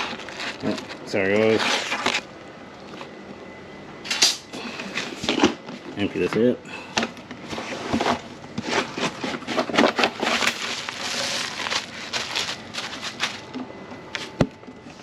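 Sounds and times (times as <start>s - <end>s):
rustling: 7.5s - 13.6s.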